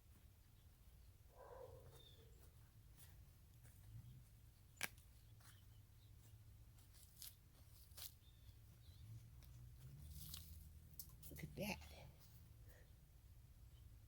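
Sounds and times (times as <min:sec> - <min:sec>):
hands digging through soil: 0:04.7 - 0:12.5.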